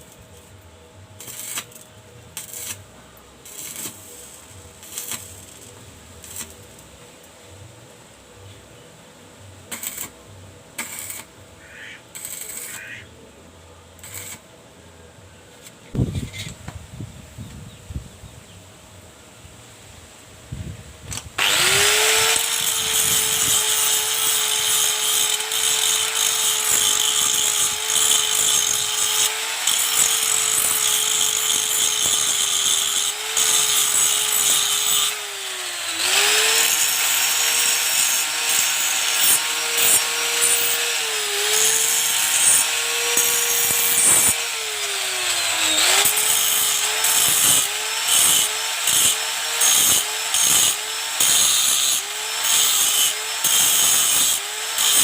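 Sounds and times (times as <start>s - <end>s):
electric power tool running: 21.1s - 55.0s.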